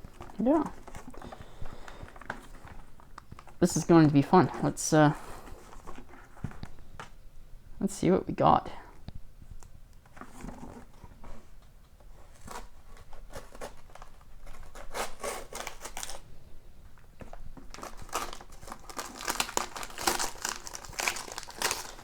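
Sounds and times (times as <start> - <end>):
wrapping paper tearing and rustling: 12.1 - 16.3, 17.6 - 22.0.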